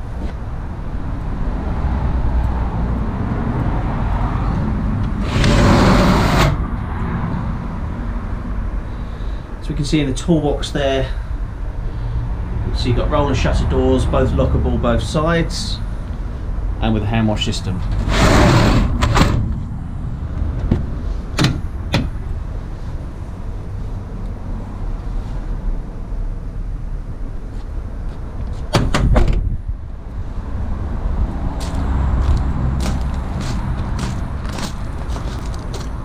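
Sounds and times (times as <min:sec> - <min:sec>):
steady low rumble: 0:00.0 - 0:28.5
van doors and catches clicking: 0:20.4 - 0:22.2, 0:28.5 - 0:29.6.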